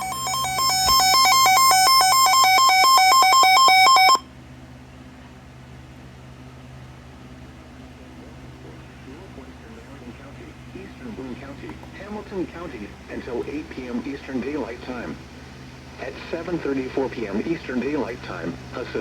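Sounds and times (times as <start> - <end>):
two-pitch emergency alert tone: 0.0 - 4.3
low steady hum: 0.0 - 19.0.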